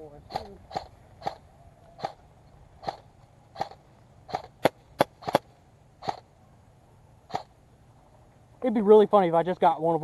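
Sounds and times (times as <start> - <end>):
airsoft gun shots: 0.3 - 1.4, 2.0 - 2.2, 2.8 - 6.3, 7.3 - 7.5.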